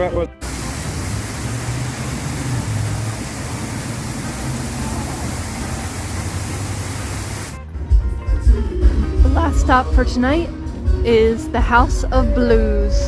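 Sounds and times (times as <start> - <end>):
steady rushing noise: 0.4 - 7.6.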